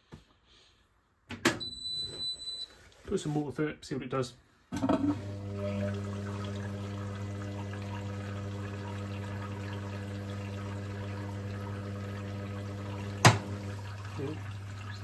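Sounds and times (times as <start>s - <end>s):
washing machine humming: 4.8s - 15.0s
water running in: 4.9s - 15.0s.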